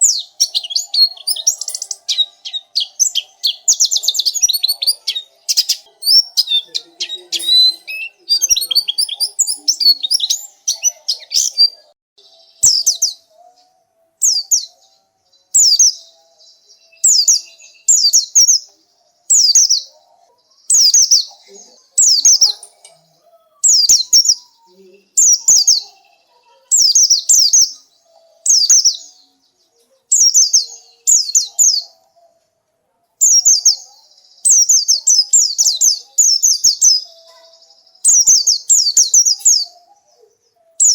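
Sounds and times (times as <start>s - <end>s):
bird song falling notes: 0.0s - 4.7s
bird twittering: 0.0s - 13.6s.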